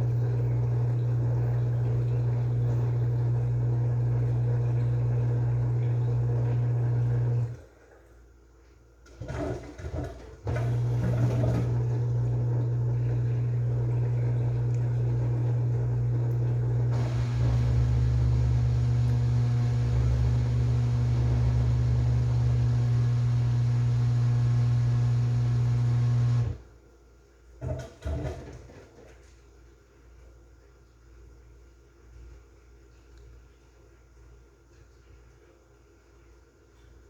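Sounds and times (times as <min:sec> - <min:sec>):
washing machine motor humming: 0:00.0 - 0:07.8, 0:09.1 - 0:26.7.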